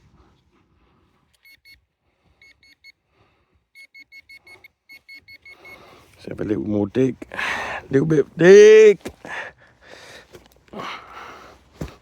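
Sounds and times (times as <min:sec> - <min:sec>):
high beeps from metal detector: 0:01.4 - 0:01.8, 0:02.4 - 0:03.0, 0:03.8 - 0:05.9.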